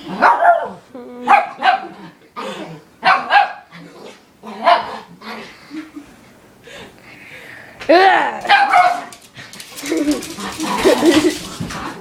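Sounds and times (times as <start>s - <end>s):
dog barking: 0.2s - 1.9s, 3.0s - 3.7s, 4.6s - 5.0s, 8.5s - 9.2s.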